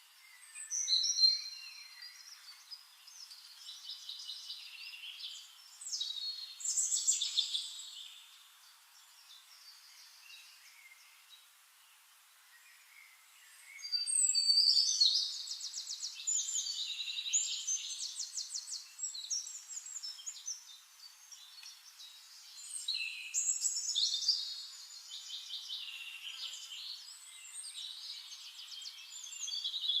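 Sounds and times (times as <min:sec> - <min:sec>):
songbirds trilling and chirping: 0:00.0 - 0:30.0.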